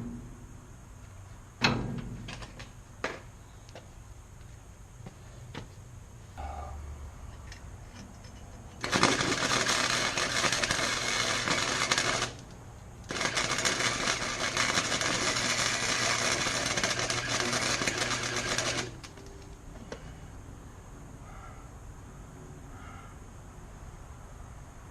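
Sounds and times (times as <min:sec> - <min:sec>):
welder hum: 0:08.8 - 0:19.4
welding arc crackling: 0:08.8 - 0:19.4.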